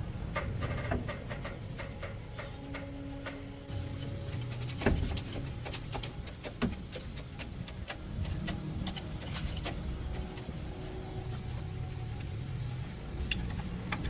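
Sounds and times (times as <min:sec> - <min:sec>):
low hum: 0:00.0 - 0:14.0
hand tools clicking on metal: 0:00.3 - 0:10.6.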